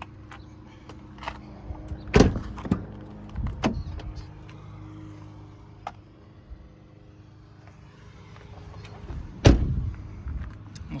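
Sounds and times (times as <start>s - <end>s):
car door shutting thud: 2.1s - 2.8s, 9.4s - 9.8s.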